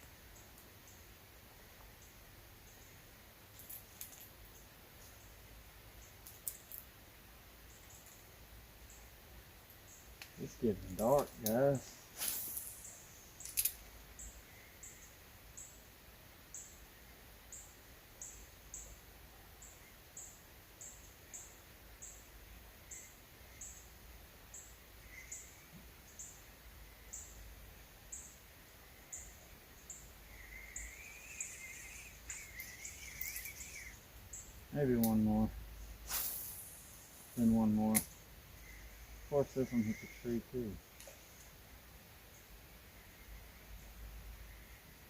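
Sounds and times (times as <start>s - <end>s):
high thin chirp: 10.4s - 13.6s, 29.9s - 41.6s
faint warbling call: 30.3s - 34.0s.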